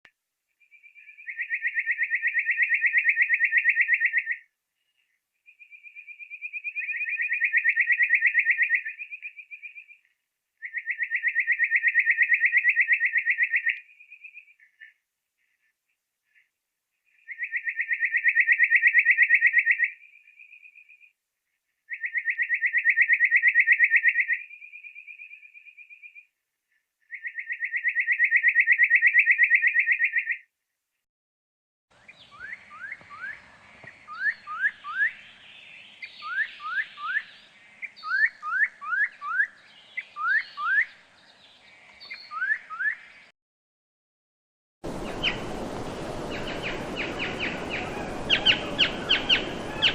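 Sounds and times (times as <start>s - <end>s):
background hiss: 32.0s - 38.0s, 44.8s - 49.9s
short rising bird notes: 44.8s - 49.9s
nuthatch rattling trills: 44.9s - 49.9s.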